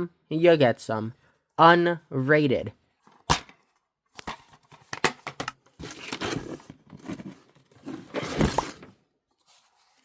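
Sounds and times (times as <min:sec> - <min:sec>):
rustling and scraping: 0:04.4 - 0:10.0.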